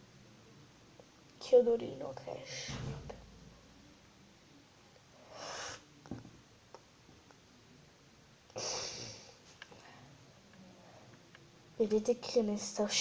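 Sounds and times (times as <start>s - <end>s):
person sniffing: 5.3s - 5.9s, 8.6s - 9.4s.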